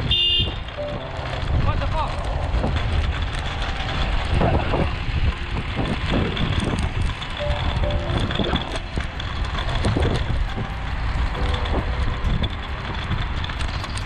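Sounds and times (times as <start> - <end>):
road and wind rumble: 0.0 - 14.0
faint steady tones: 0.6 - 14.0.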